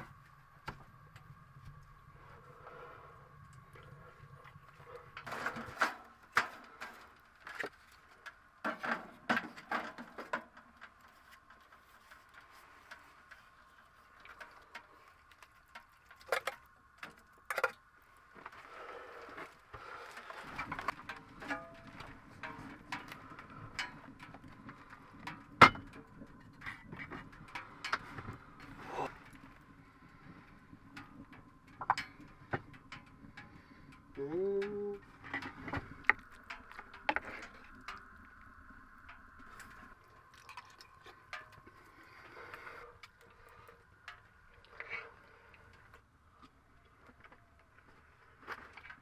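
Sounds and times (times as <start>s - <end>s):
faint steady background noise: 0.0s - 49.0s
steady low hum: 0.0s - 49.0s
knocks and clatters of handling: 4.7s - 29.6s.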